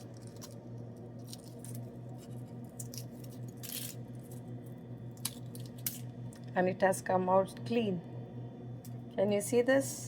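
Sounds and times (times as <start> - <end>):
eggshell crackling as peeled: 0.0 - 6.1
low hum: 0.0 - 10.0.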